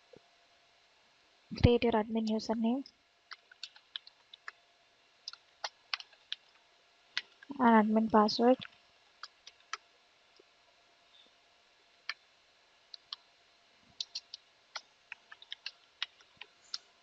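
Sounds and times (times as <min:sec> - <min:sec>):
computer keyboard typing: 0:03.4 - 0:04.5, 0:05.3 - 0:06.5, 0:14.0 - 0:16.8.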